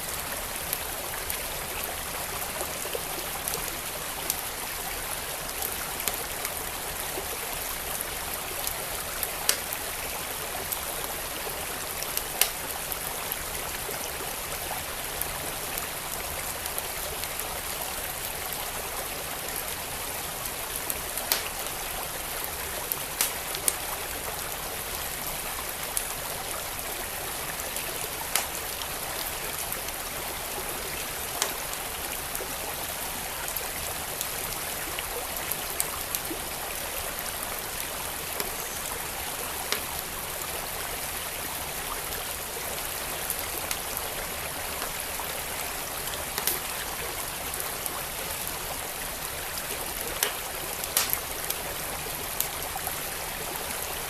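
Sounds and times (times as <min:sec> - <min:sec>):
flowing creek: 0:00.0 - 0:54.0
wood fire crackling and popping: 0:09.5 - 0:09.7, 0:12.3 - 0:12.7, 0:21.2 - 0:21.6, 0:23.2 - 0:23.9, 0:28.2 - 0:28.8, 0:31.4 - 0:31.6, 0:38.3 - 0:40.0, 0:46.4 - 0:46.7, 0:50.2 - 0:51.6.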